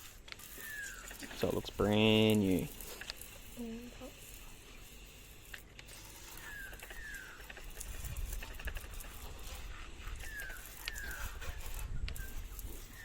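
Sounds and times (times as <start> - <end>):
faint ticks and patter: 0.0 - 13.0
bird whistled calls: 0.6 - 1.1, 6.4 - 7.4, 10.2 - 11.4.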